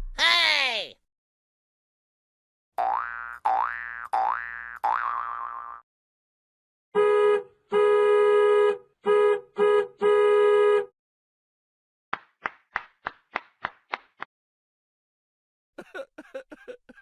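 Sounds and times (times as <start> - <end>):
comedy horn honks: 7.0 - 10.9.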